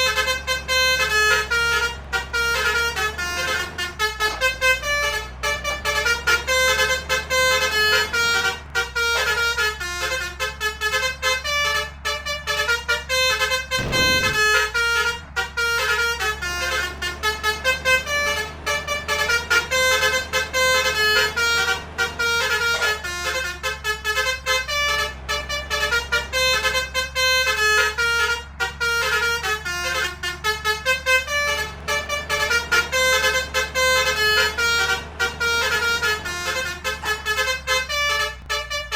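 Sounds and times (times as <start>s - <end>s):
multi-trumpet horn playing a tune: 13.8s - 14.8s.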